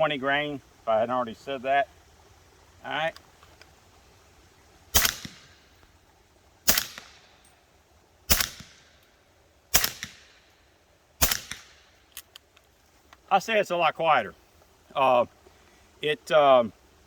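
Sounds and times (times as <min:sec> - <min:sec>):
suppressed rifle shots: 0:04.9 - 0:05.6, 0:06.7 - 0:07.3, 0:08.3 - 0:08.9, 0:09.7 - 0:10.5, 0:11.2 - 0:11.9.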